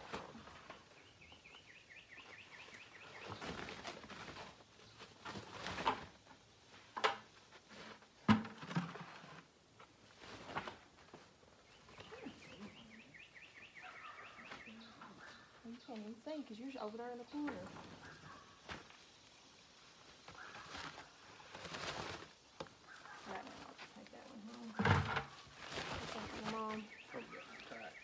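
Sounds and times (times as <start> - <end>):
corn husks rustling: 0.0 - 28.0
faint chirping: 11.5 - 21.4
corn ears knocking together: 24.7 - 26.9.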